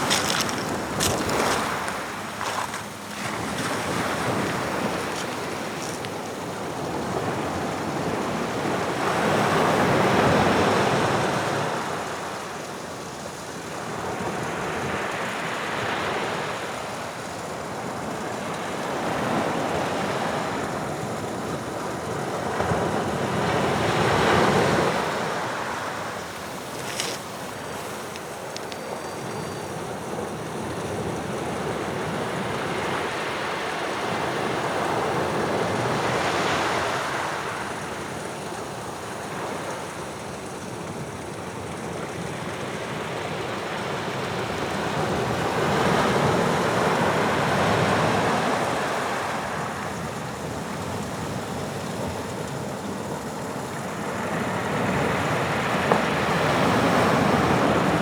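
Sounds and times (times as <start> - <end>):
waves breaking on shore: 0.0 - 12.0, 22.0 - 28.8.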